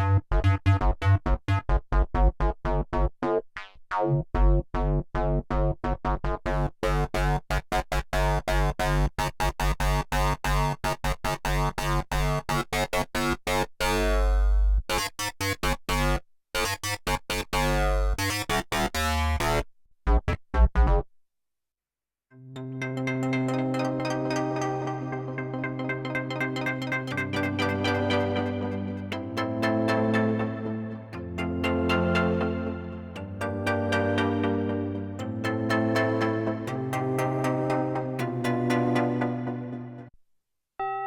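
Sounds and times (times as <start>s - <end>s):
low synth bass line: 0.0s - 3.0s
synthesizer short repeated notes: 22.6s - 40.0s.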